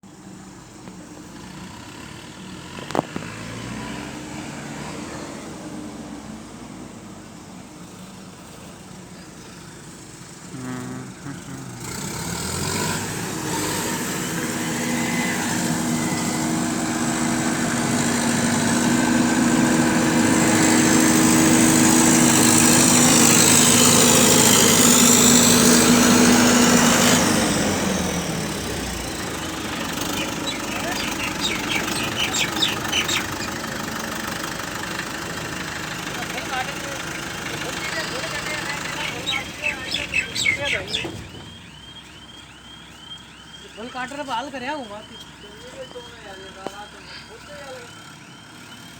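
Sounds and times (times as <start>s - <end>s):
combine harvester running: 10.5s - 48.9s.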